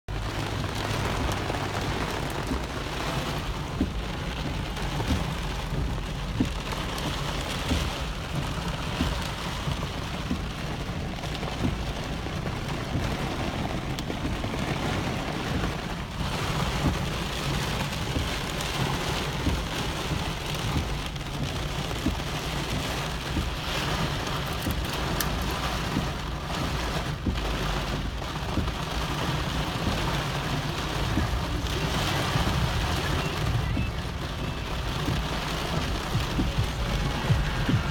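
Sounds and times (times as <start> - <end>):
heavy rain on hard surface: 0.0 - 37.9
low rumble: 29.8 - 37.9.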